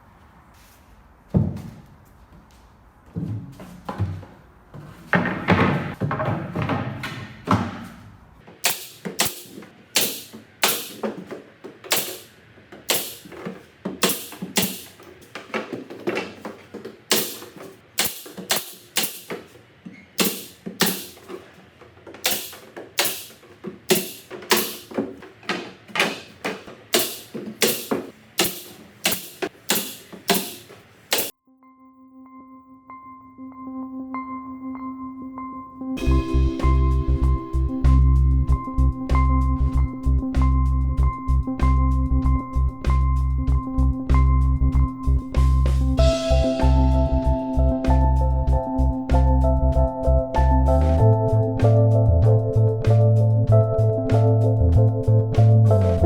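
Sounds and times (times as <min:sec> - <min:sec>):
hammer nailing wood: 0:08.6 - 0:19.5, 0:20.2 - 0:21.5, 0:22.2 - 0:31.3.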